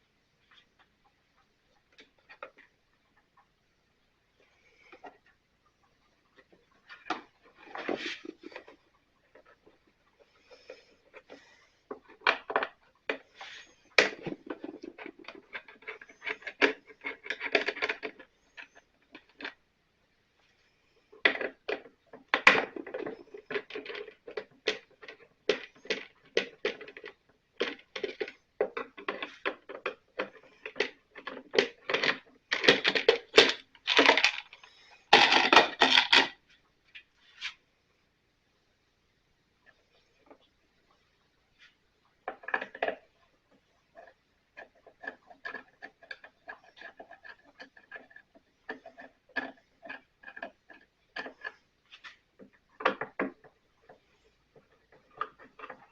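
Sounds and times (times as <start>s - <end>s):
plastic and metal parts rattling: 6.3s - 19.6s, 21.1s - 36.5s, 42.2s - 55.9s
hand tools clicking and knocking: 42.3s - 55.9s.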